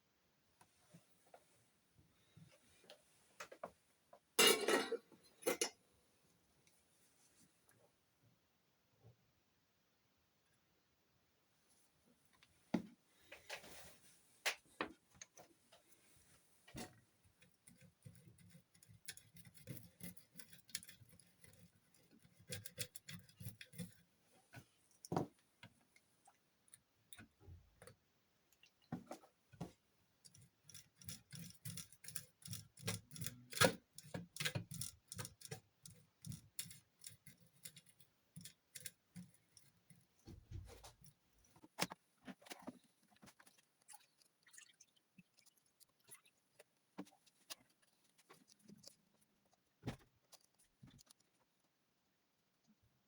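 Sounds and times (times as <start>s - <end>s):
tools clicking on laptop parts: 16.8s - 24.0s, 30.3s - 40.1s.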